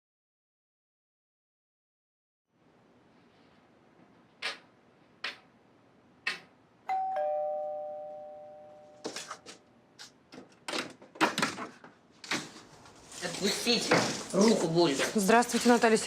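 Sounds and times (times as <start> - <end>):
two-note doorbell chime: 6.9 - 9.1.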